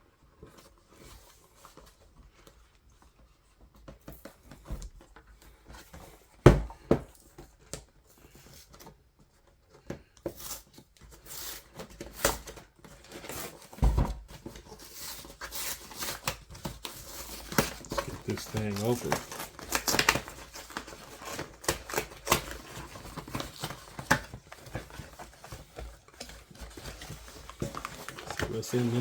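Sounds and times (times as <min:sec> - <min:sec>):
packaging rustling and crinkling: 0:00.2 - 0:29.0
taps and knocks on box: 0:06.4 - 0:07.2.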